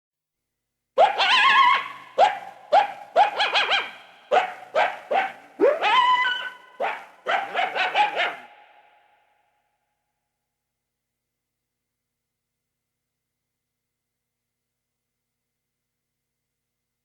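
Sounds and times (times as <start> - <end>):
coyote yips and howls: 1.0 - 9.0.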